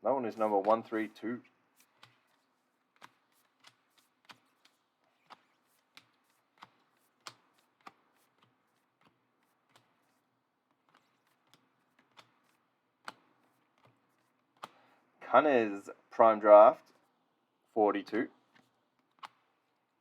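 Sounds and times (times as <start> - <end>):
trading cards clicking: 1.8 - 10.2, 10.8 - 15.0, 18.5 - 19.6.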